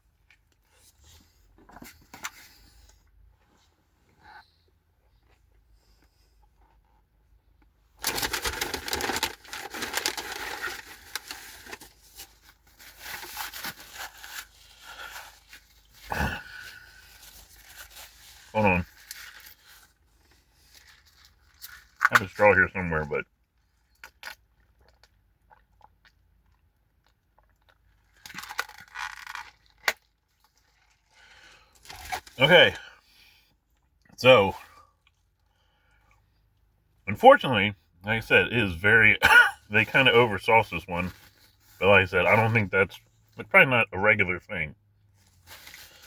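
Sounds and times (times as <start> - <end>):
fast-food packaging crinkling: 8.0 - 22.4, 27.4 - 32.4, 45.3 - 46.0.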